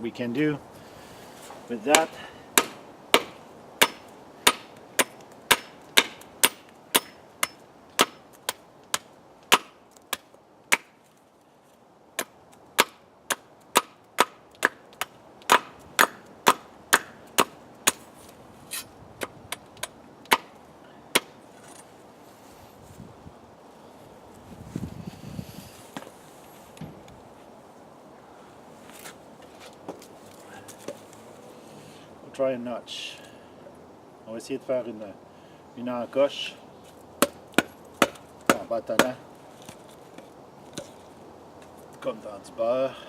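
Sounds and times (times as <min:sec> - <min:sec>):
machete chopping wood: 0:01.9 - 0:10.9, 0:12.2 - 0:18.0, 0:19.2 - 0:21.4, 0:37.2 - 0:39.2.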